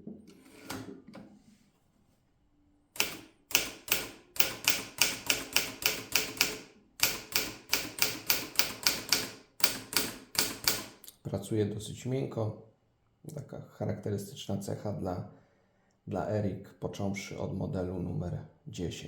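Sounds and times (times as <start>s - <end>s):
typewriter key strikes: 3.0s - 11.0s.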